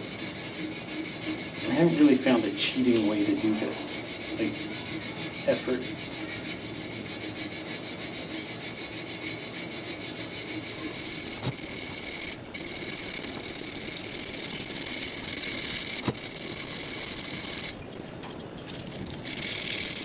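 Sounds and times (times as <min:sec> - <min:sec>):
sandpaper rubbing on metal: 0:00.0 - 0:17.7.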